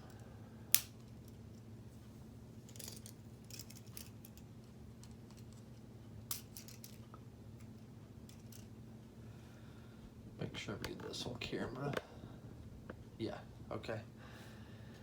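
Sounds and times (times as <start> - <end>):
plastic pieces clicking and rattling: 2.7 - 4.4, 6.3 - 7.0.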